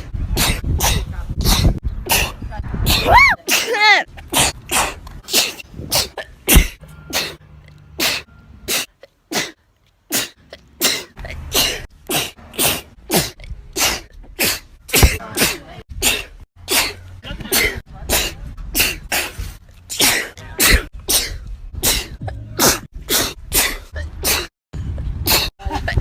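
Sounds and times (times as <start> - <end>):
woman sneezing: 0.4 - 4.5, 20.0 - 24.5.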